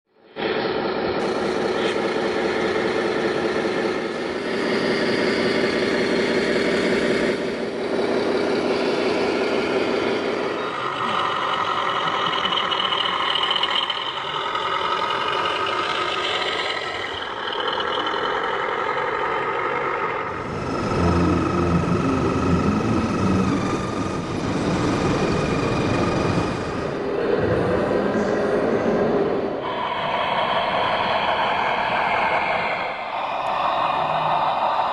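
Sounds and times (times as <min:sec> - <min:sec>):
truck engine running: 0:00.4 - 0:27.8.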